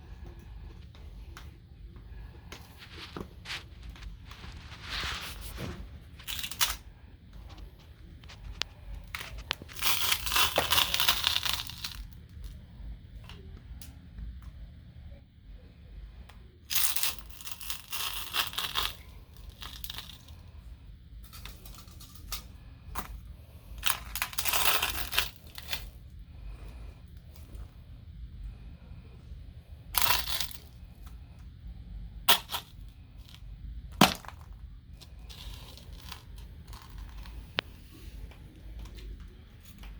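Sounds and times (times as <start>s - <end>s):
brittle crunching underfoot: 2.2s - 12.4s, 30.0s - 30.8s, 32.3s - 39.9s.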